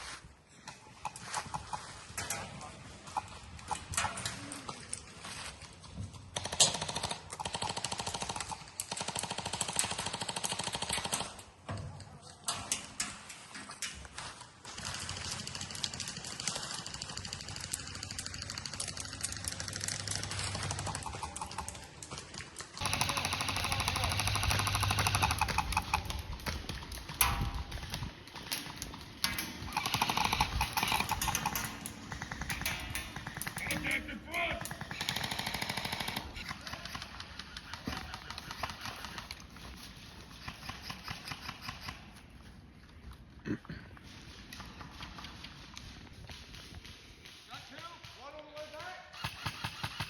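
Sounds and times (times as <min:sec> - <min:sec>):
airsoft gun rapid firing: 0:06.4 - 0:11.4, 0:22.8 - 0:26.2, 0:29.3 - 0:39.4, 0:47.6 - 0:50.0.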